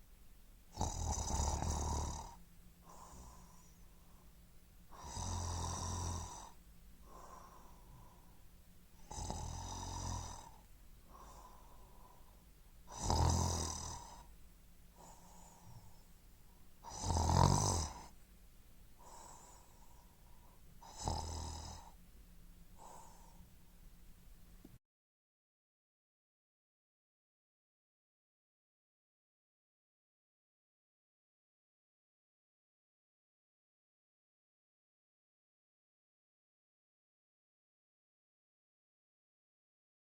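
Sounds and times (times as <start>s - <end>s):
person snoring: 0.7s - 3.8s, 4.9s - 8.2s, 9.0s - 12.2s, 12.9s - 14.3s, 16.8s - 18.1s, 20.8s - 22.0s, 22.8s - 23.4s.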